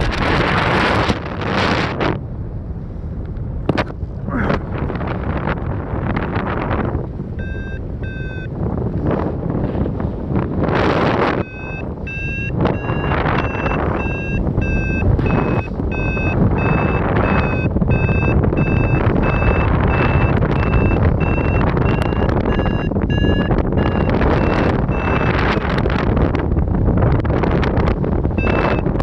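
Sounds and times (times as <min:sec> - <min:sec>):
wind rushing on microphone: 0:00.0 - 0:29.0
variometer beeping: 0:07.3 - 0:09.0, 0:10.6 - 0:26.2, 0:28.1 - 0:29.0.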